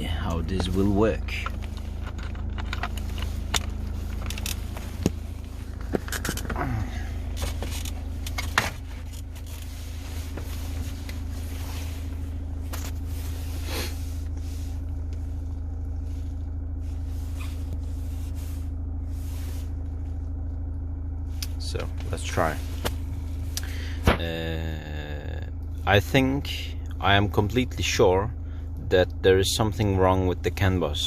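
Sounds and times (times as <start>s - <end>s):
car engine hum inside cabin: 0.0s - 31.0s
sharp clicks and knocks: 1.4s - 5.2s.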